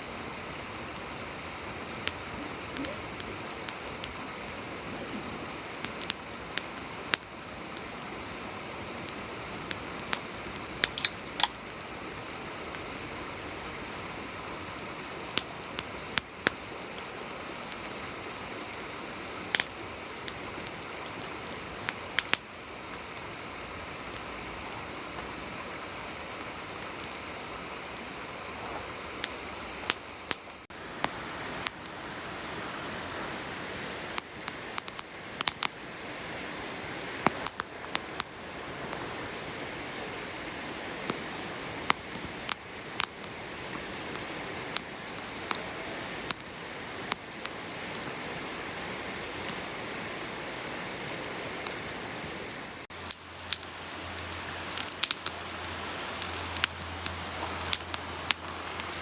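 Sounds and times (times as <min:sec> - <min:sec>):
fire crackling and popping: 0:00.0 - 0:11.9, 0:14.7 - 0:24.4, 0:30.7 - 0:59.0
fire hissing: 0:30.7 - 0:59.0.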